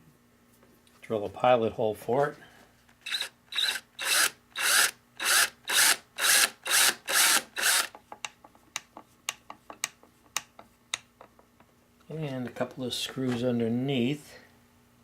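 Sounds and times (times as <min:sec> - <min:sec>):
drill boring into wood: 0:03.0 - 0:07.9.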